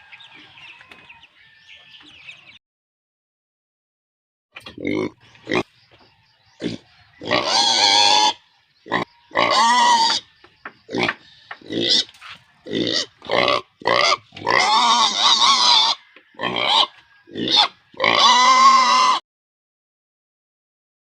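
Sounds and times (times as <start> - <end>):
pigs squealing: 4.6 - 5.7, 6.6 - 10.3, 10.9 - 19.2.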